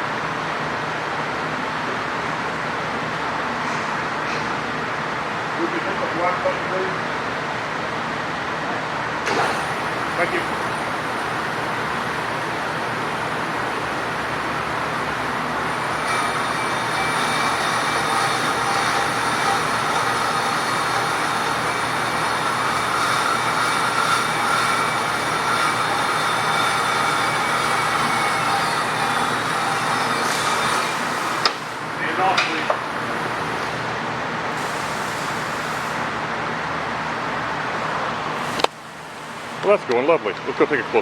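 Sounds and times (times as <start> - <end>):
bandsaw cutting metal: 9.3 - 33.9, 34.5 - 36.1.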